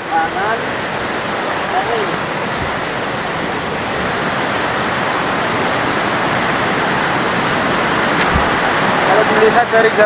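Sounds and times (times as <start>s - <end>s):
flowing water rushing: 0.0s - 10.0s.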